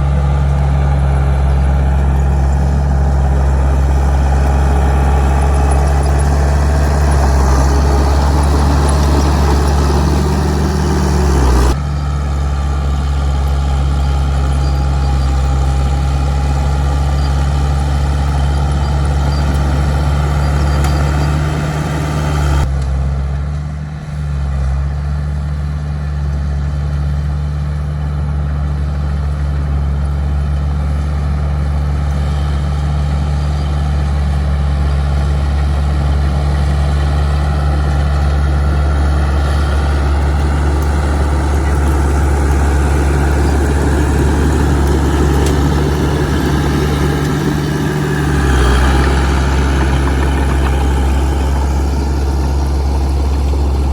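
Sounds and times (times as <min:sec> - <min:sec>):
heavy diesel engine droning: 0:00.0 - 0:53.9.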